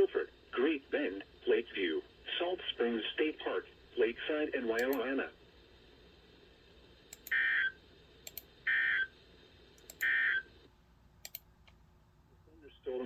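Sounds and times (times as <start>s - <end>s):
faint clicks: 4.8s - 5.0s, 7.1s - 7.4s, 8.2s - 8.5s, 9.7s - 10.1s, 11.2s - 11.8s.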